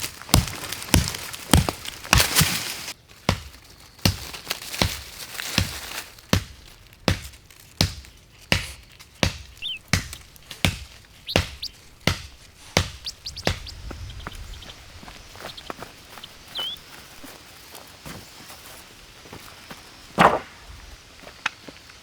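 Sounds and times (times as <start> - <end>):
chopping wood with hand tool: 0.0 - 17.3, 20.2 - 20.6
bird chirping: 9.5 - 17.4.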